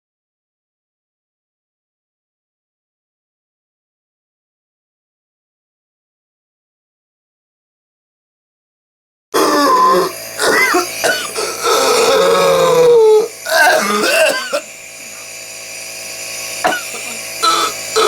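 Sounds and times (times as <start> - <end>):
man coughing harshly: 9.4 - 12.8, 13.5 - 14.7, 16.6 - 18.0
pitched whooping vocal sound: 11.7 - 13.3.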